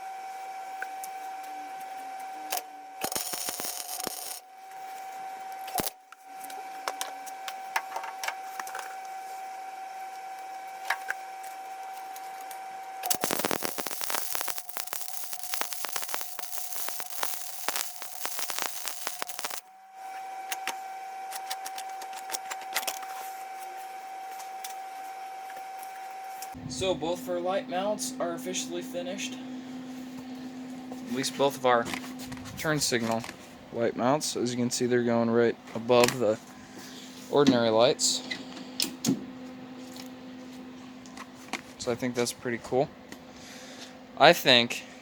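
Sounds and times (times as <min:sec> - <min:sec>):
steady hum: 0:02.5 - 0:04.5, 0:05.8 - 0:06.0, 0:13.0 - 0:19.7
loud dense crackling: 0:03.1 - 0:04.4, 0:13.0 - 0:19.6.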